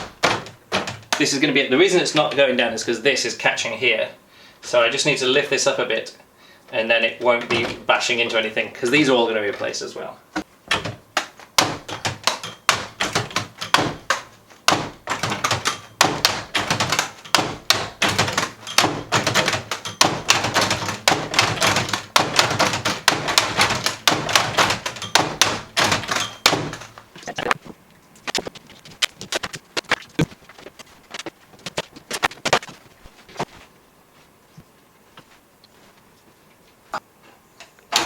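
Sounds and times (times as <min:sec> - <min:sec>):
wooden and metal parts clacking: 0:00.0 - 0:01.4, 0:10.4 - 0:27.3.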